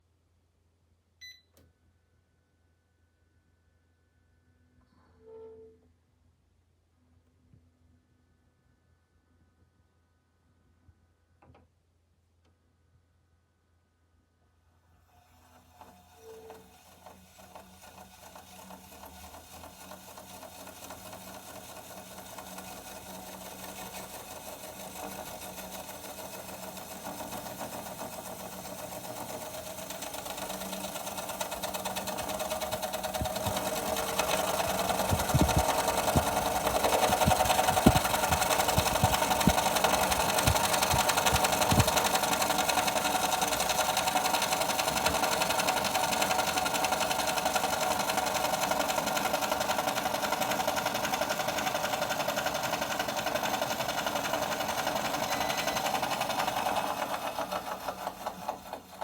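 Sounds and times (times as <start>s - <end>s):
low knocking rattle: 26.0s - 49.9s
dehumidifier humming: 29.9s - 47.8s.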